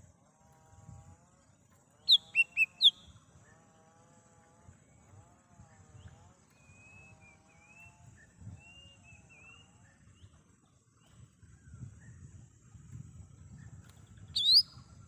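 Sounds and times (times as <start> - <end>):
bird whistling and chirping: 2.0 - 3.1, 6.7 - 9.9, 14.3 - 14.9.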